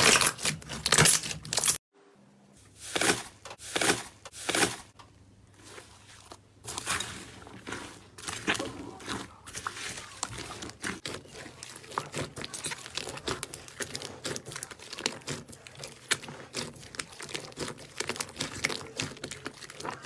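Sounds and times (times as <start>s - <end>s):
slime crackling and popping: 8.0s - 20.0s.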